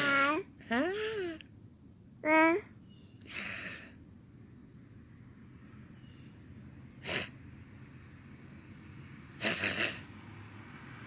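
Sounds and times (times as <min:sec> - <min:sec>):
person snorting: 0:07.0 - 0:07.3, 0:09.4 - 0:10.0.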